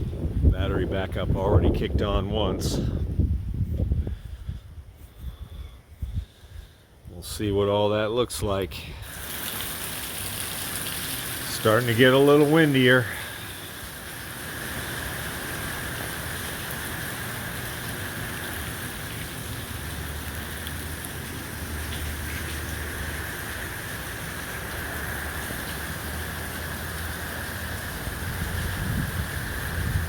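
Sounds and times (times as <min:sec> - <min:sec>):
wind on microphone: 0:00.0 - 0:06.8, 0:28.1 - 0:30.0
heavy rain falling: 0:09.0 - 0:30.0.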